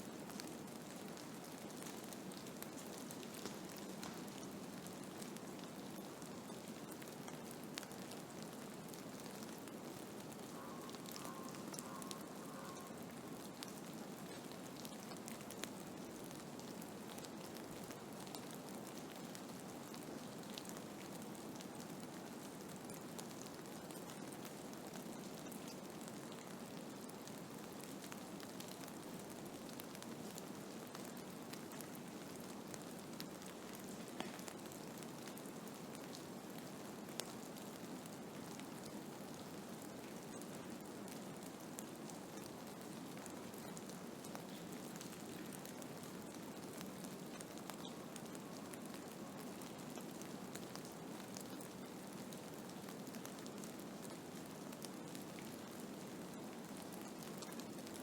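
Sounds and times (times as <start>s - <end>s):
faint ticks of ice pellets: 1.7s - 9.7s, 10.5s - 15.8s, 33.5s - 35.4s.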